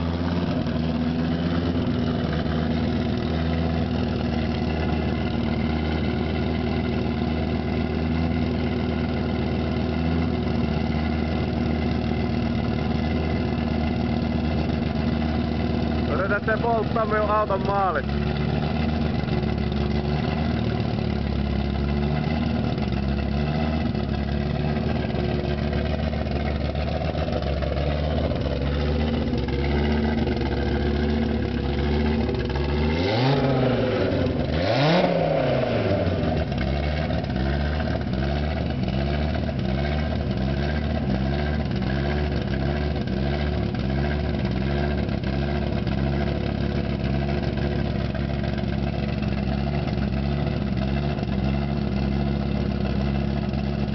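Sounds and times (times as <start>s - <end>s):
car engine idling unevenly: 0.0s - 53.9s
car engine revving: 0.0s - 53.9s.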